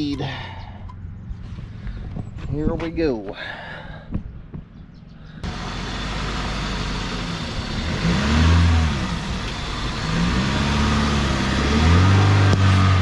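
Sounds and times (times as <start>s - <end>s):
vehicle engine revving: 5.4s - 13.0s.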